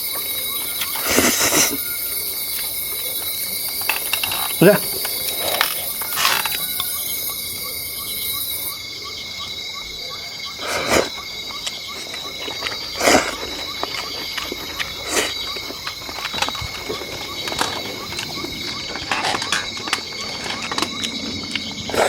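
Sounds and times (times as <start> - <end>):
insects chirping: 0.0 - 22.0.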